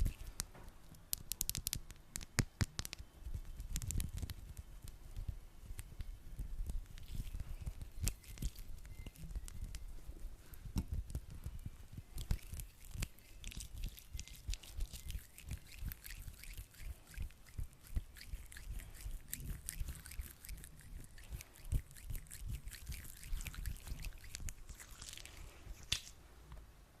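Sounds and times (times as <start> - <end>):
sticky gel rubbed between hands: 0.0 - 26.2.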